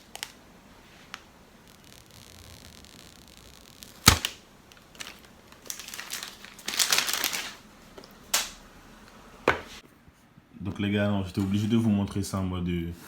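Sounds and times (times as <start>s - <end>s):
paper crinkling and tearing: 3.8s - 7.6s.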